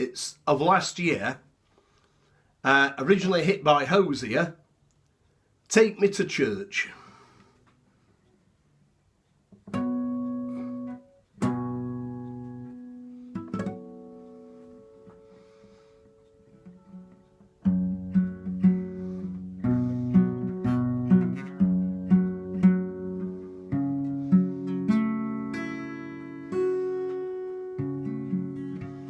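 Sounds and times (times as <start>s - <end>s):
acoustic guitar strumming: 9.5s - 29.0s
acoustic guitar chords ringing: 9.6s - 29.0s.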